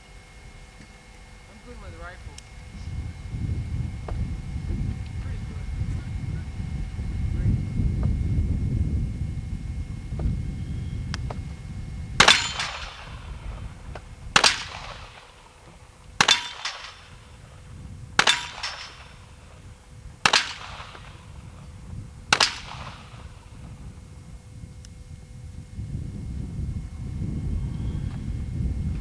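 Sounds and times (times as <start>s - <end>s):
revolver shots with echo: 12.2s - 13.6s, 14.4s - 15.5s, 16.2s - 17.6s, 18.2s - 21.6s, 22.3s - 23.6s.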